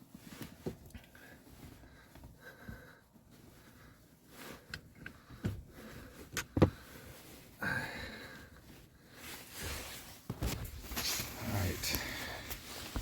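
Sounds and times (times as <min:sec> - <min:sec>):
pedal cover scraping and rubbing: 0:08.6 - 0:13.0.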